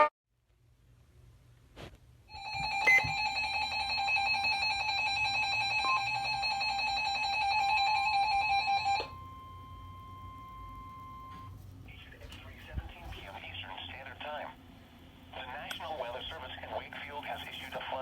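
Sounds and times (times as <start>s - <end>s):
two-tone electronic alarm: 2.3s - 11.6s.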